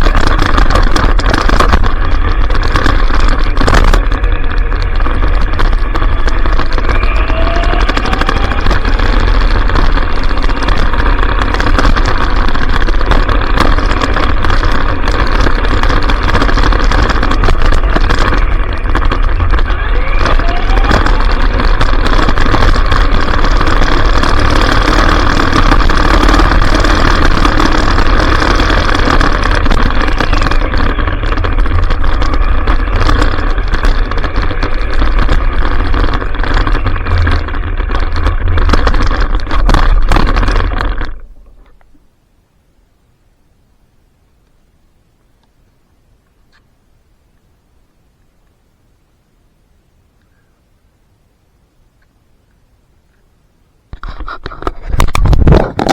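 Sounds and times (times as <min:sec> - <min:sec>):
rc truck motor and drivetrain: 0:00.0 - 0:41.9
tyre rumble: 0:00.0 - 0:42.0, 0:53.9 - 0:55.9.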